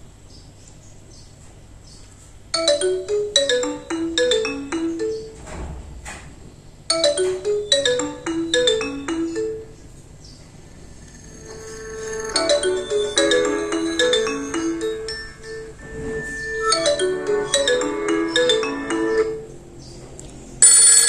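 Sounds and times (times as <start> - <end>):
mobile phone ringtone: 2.6 - 5.4, 6.9 - 9.8, 10.6 - 19.5, 20.6 - 21.0.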